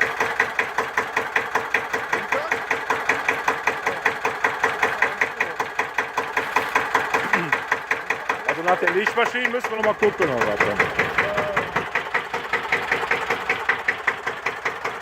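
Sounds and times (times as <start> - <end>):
diesel tractor engine idling: 0.0 - 15.0.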